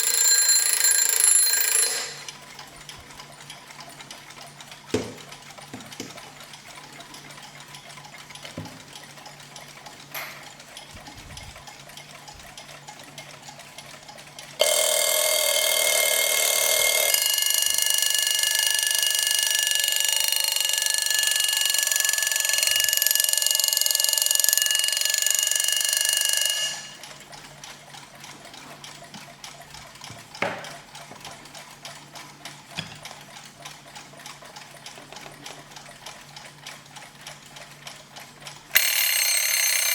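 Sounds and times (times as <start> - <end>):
alarm clock bell ringing: 0.0 - 2.4, 14.6 - 27.2, 38.7 - 39.9
alarm clock ticking: 0.0 - 10.9, 11.7 - 35.0, 35.8 - 39.9.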